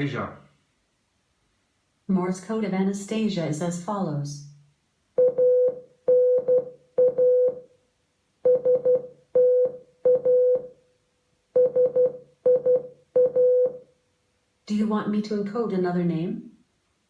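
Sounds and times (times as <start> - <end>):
morse code beeps: 5.2 - 7.6, 8.4 - 10.7, 11.6 - 13.8.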